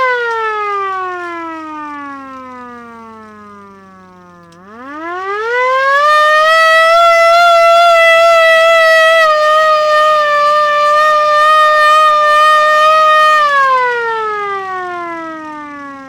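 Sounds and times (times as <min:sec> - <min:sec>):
hand-cranked air raid siren wailing: 0:00.0 - 0:16.0.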